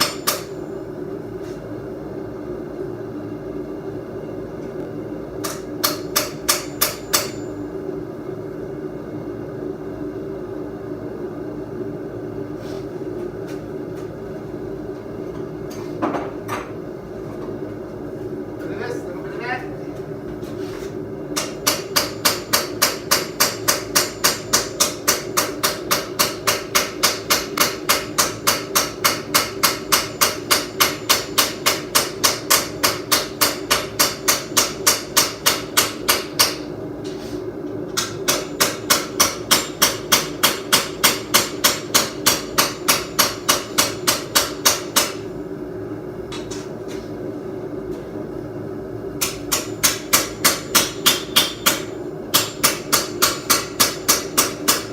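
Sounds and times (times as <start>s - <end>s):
hammer striking hot steel: 0.0s - 0.6s, 5.4s - 7.6s, 21.4s - 36.7s, 38.0s - 45.3s, 49.2s - 54.9s.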